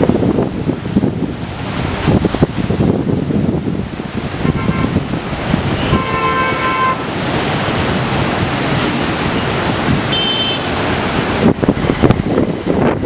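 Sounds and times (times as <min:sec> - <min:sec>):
strong wind and rain rushing: 0:00.0 - 0:13.0
wind gusts buffeting microphone: 0:00.0 - 0:13.0.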